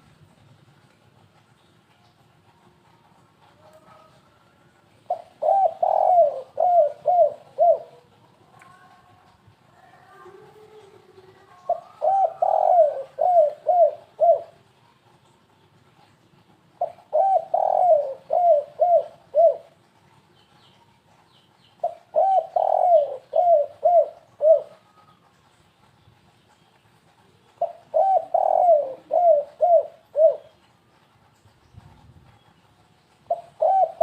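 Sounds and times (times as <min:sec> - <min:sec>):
dove cooing: 0:05.1 - 0:09.0, 0:09.9 - 0:14.7, 0:16.8 - 0:19.8, 0:21.8 - 0:24.9, 0:27.4 - 0:30.6, 0:33.3 - 0:34.0.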